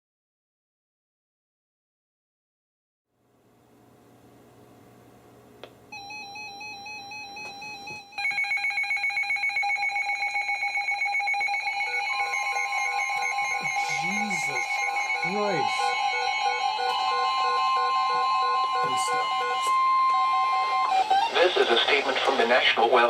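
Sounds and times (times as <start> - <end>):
beeping alarm tones: 5.9 - 21.9
warbling alarm tone: 5.9 - 22.1
steady alarm tone: 5.9 - 22.4.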